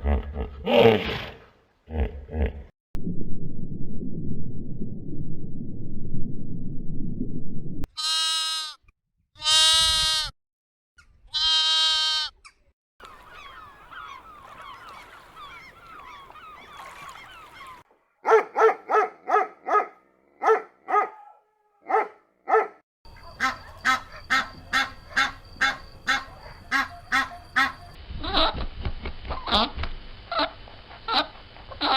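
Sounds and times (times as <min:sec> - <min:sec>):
long bleating calls: 0:08.0 - 0:08.8, 0:09.4 - 0:10.3, 0:11.3 - 0:12.4.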